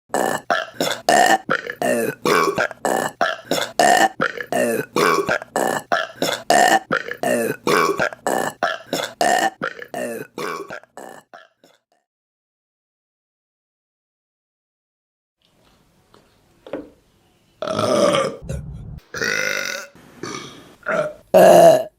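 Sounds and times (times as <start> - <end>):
woman burping: 0.1 - 11.8, 17.6 - 18.4, 19.2 - 21.9.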